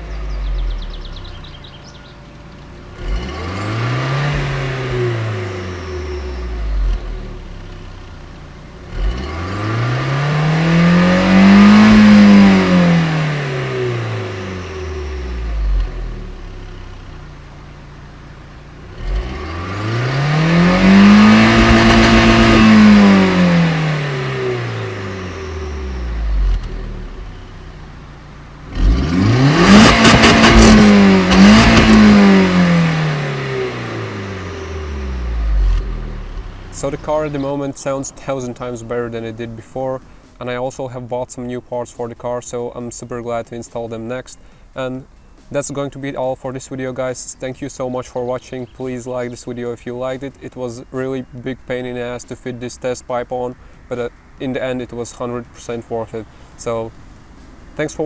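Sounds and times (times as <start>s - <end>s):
car engine revving: 0.0s - 40.4s
exhaust crackle: 0.0s - 58.0s.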